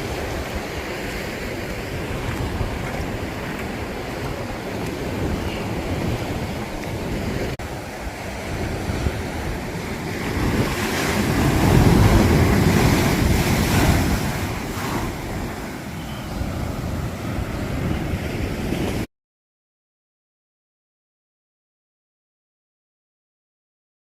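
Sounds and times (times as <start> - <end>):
ocean surf breaking: 0.0 - 19.1
wind buffeting microphone: 0.0 - 19.1.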